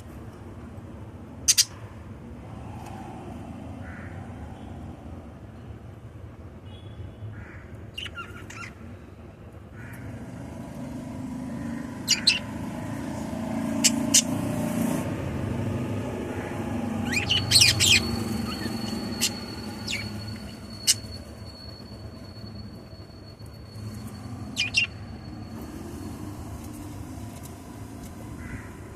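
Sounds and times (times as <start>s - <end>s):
parrots chirping: 1.5s - 1.8s, 7.9s - 8.8s, 11.4s - 15.0s, 16.5s - 22.4s, 23.7s - 26.8s.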